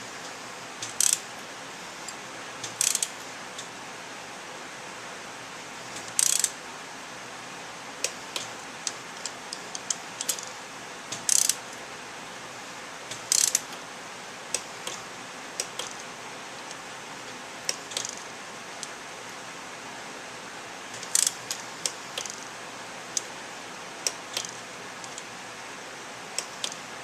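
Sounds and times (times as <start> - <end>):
torque wrench ratcheting: 0.8 - 1.2, 2.6 - 3.2, 6.0 - 6.6, 9.2 - 11.6, 13.1 - 13.8, 15.6 - 16.0, 17.7 - 18.2, 21.0 - 22.5, 24.0 - 25.2, 26.4 - 26.8.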